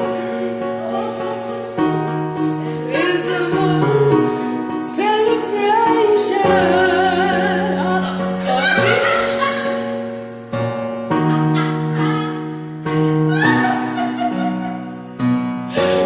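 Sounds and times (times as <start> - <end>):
woman singing a ballad: 2.5 - 10.2, 11.6 - 15.0.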